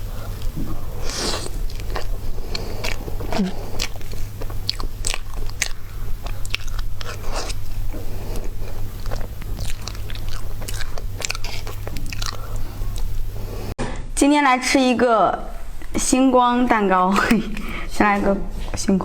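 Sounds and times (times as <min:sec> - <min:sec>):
chewing and biting mouth sounds: 0:00.0 - 0:13.7.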